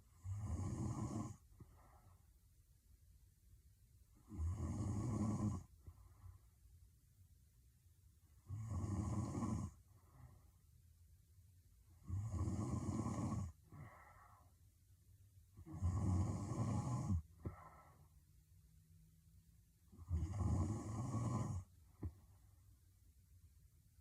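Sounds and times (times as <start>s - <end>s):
woman snoring: 0.1s - 1.4s, 4.2s - 5.7s, 8.4s - 9.8s, 12.0s - 14.1s, 15.6s - 17.8s, 19.9s - 21.7s.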